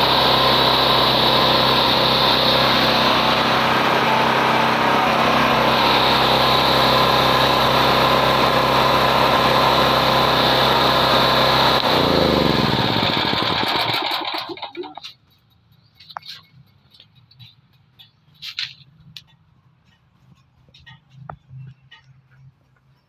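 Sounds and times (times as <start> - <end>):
generator engine running: 0.0 - 15.1.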